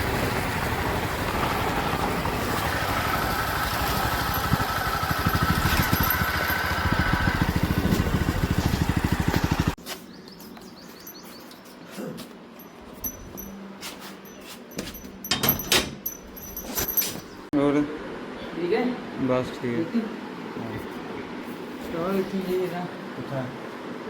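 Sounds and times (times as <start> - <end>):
single-cylinder engine idling: 0.0 - 9.8.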